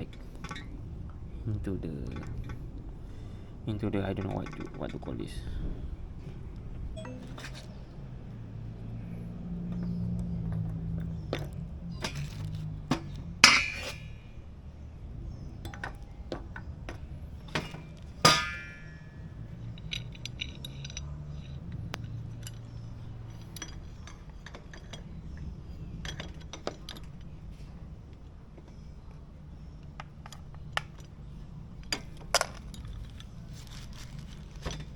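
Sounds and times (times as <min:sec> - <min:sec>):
metal tools clinking: 0:07.0 - 0:07.9, 0:09.7 - 0:14.5, 0:15.6 - 0:27.8, 0:29.8 - 0:34.9
ringing metal clanks: 0:07.0 - 0:07.9, 0:11.3 - 0:14.4, 0:15.6 - 0:27.2.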